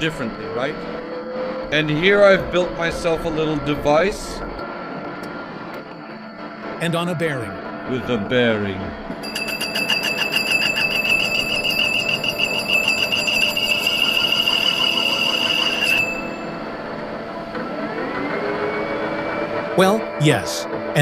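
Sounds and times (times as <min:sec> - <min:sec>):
rising whine: 0:00.0 - 0:21.0
metal lathe humming: 0:09.2 - 0:17.1
high-pitched pulsing squeal: 0:09.2 - 0:19.9.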